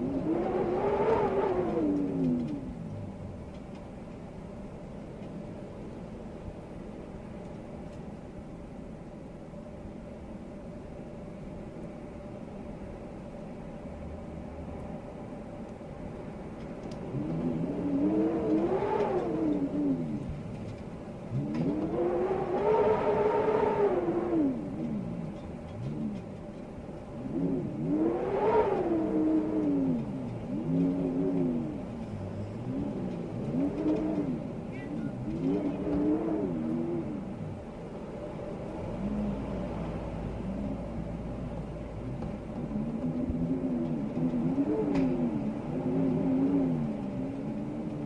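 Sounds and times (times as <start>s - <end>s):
storm wind howling: 0.0s - 3.5s, 17.0s - 48.0s.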